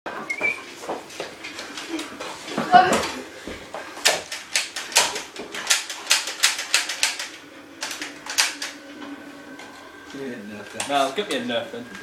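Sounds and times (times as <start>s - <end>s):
toy blaster clicking: 4.0s - 8.8s.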